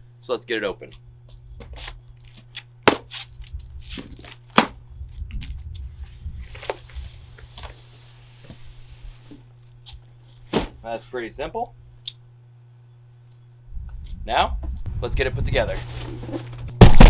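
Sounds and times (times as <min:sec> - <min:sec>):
cardboard tearing and rustling: 0:01.6 - 0:04.8, 0:05.4 - 0:10.8, 0:15.7 - 0:17.0
cardboard knocks and snaps: 0:02.9 - 0:04.8, 0:10.5 - 0:10.8, 0:16.8 - 0:17.0.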